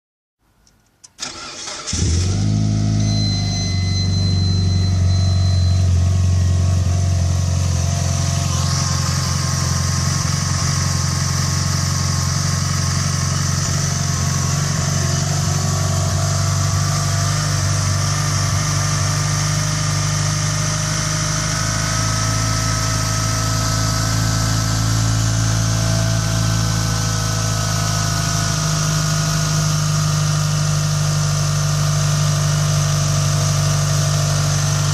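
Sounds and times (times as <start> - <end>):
car engine cranking on starter: 1.0 - 5.2
car engine idling: 1.2 - 34.9.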